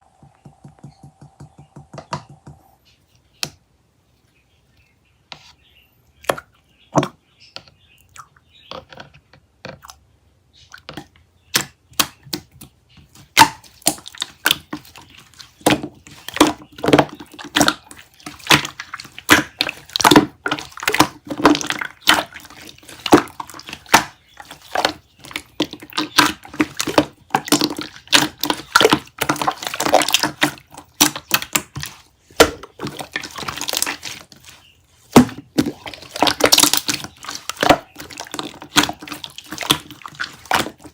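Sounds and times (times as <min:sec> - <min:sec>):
slime squishing and popping: 0:10.9 - 0:40.9.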